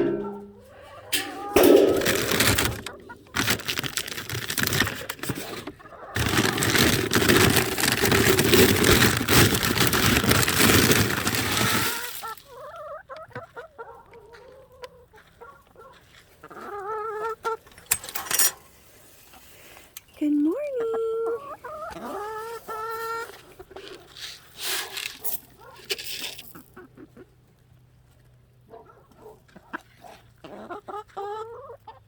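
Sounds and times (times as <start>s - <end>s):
chickens clucking: 0.0s - 4.4s, 5.4s - 8.2s, 8.8s - 17.8s, 20.5s - 24.1s, 26.4s - 32.0s
loud rustling: 1.2s - 12.4s.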